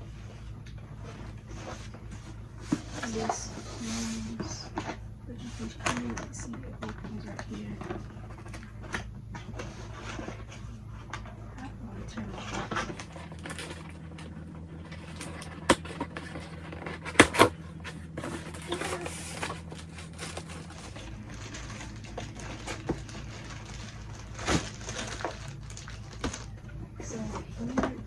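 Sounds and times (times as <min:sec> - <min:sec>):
steady low hum: 0:00.0 - 0:28.0
packaging knocks and clicks: 0:12.7 - 0:26.5.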